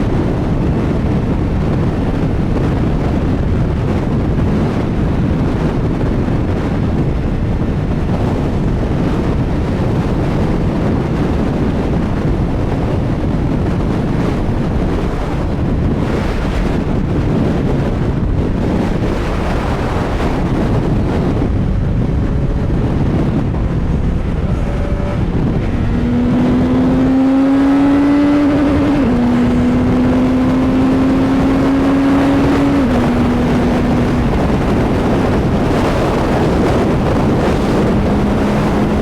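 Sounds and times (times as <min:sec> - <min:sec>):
wind buffeting microphone: 0:00.0 - 0:39.0
motorcycle engine running: 0:16.7 - 0:39.0.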